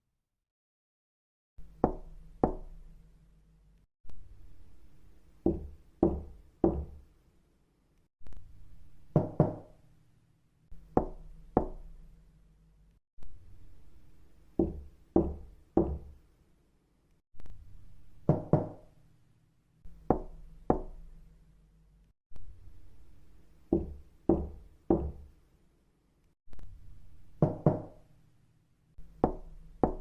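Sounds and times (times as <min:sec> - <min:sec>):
knocking on a door: 0:05.4 - 0:07.0, 0:09.2 - 0:09.7, 0:11.0 - 0:11.8, 0:14.6 - 0:16.2, 0:18.3 - 0:18.8, 0:23.7 - 0:25.3, 0:27.4 - 0:28.0, 0:29.2 - 0:30.0.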